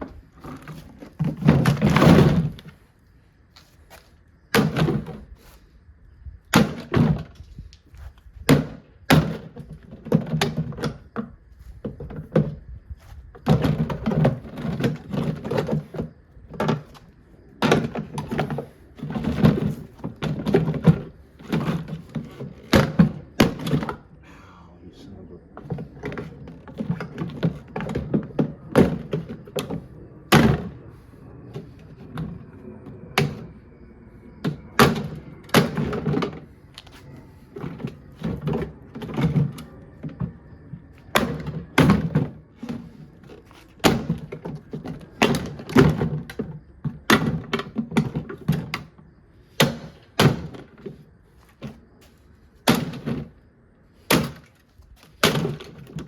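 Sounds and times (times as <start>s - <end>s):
hollow thunks on plastic: 4.5s - 5.2s, 8.4s - 12.6s, 43.8s - 48.9s, 49.6s - 50.9s, 52.6s - 53.4s, 54.1s - 56.0s.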